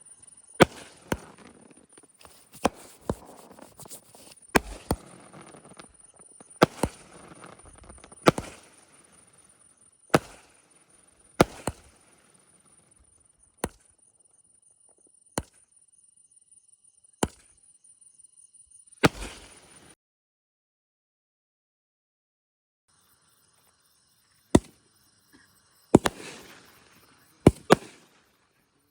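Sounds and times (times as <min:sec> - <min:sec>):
fireworks bangs: 0:00.6 - 0:10.8, 0:11.4 - 0:12.4, 0:26.0 - 0:28.4.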